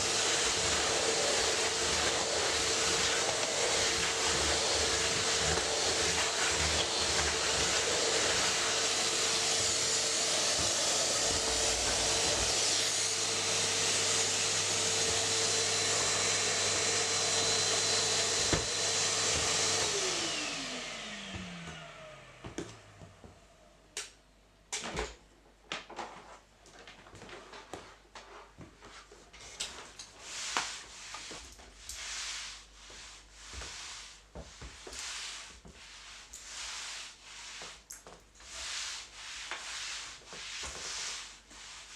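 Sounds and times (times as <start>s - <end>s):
mop rubbing on floor: 0.0s - 21.8s, 27.1s - 41.9s
vacuum cleaner running: 0.0s - 23.6s.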